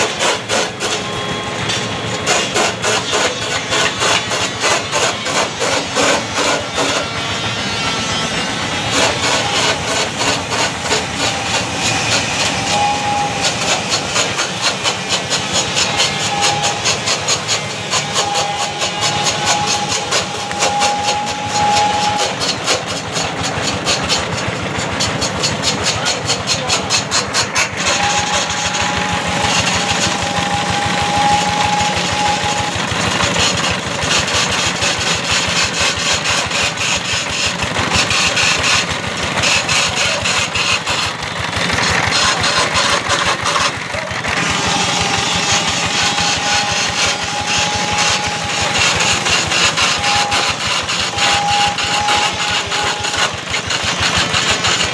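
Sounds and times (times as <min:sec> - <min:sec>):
cutter chattering on wood: 0:00.0 - 0:54.9
lathe running: 0:00.0 - 0:54.9
high whine: 0:00.4 - 0:23.6, 0:27.7 - 0:33.2, 0:42.3 - 0:53.2.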